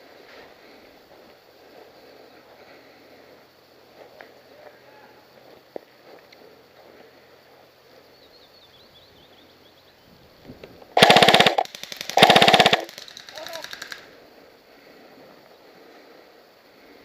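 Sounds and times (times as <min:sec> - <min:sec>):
airsoft gun automatic fire: 0:11.0 - 0:14.1.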